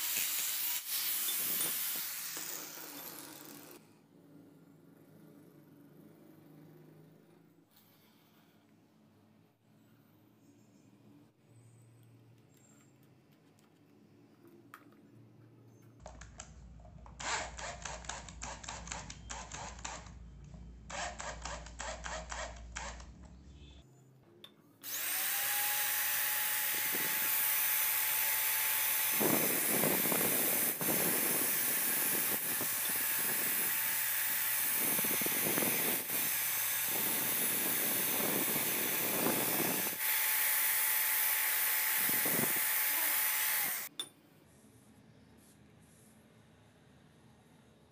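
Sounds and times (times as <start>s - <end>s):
electric power tool whining: 0.0s - 3.8s, 24.8s - 43.9s.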